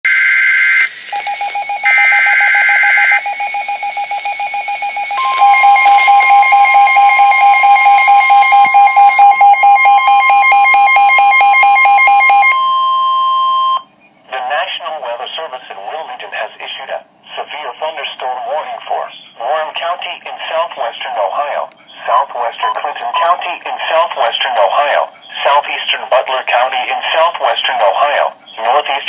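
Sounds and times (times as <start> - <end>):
rapid electronic alarm beeps: 0.1 - 13.9, 22.1 - 23.4
steady warning alarm tone: 0.1 - 13.9
fast alternating beeps: 1.1 - 12.6.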